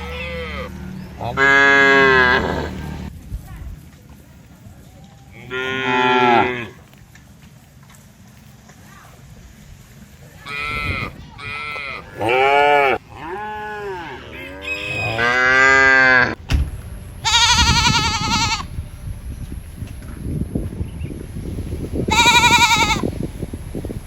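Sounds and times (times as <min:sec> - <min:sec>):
farm animals bleating: 0:00.0 - 0:03.1, 0:05.3 - 0:07.0, 0:10.4 - 0:16.4, 0:17.2 - 0:18.8, 0:22.1 - 0:23.1.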